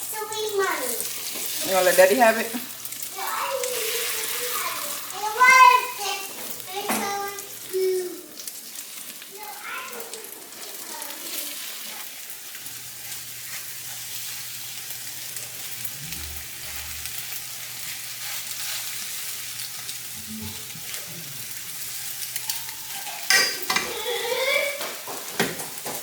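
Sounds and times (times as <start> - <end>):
food sizzling in a pan: 0.0 - 26.0.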